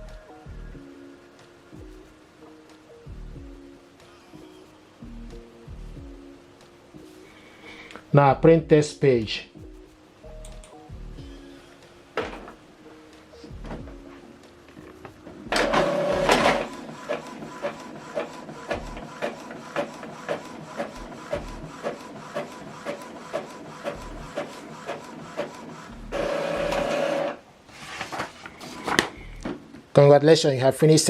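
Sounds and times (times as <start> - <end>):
printer clicks: 15.5 - 27.4
printer motor whir: 15.5 - 27.4.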